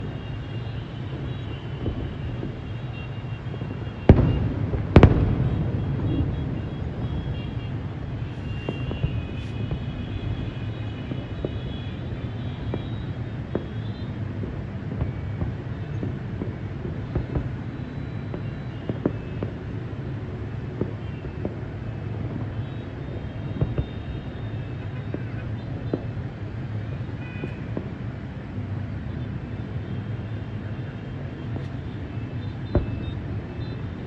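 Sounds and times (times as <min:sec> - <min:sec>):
small firework cracks: 0:00.0 - 0:19.7, 0:20.7 - 0:26.2, 0:32.4 - 0:33.9.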